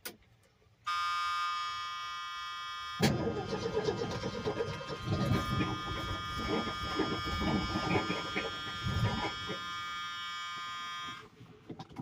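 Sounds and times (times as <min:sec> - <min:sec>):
electric warning buzzer: 0:00.9 - 0:11.3
engine starter cranking: 0:03.0 - 0:09.5.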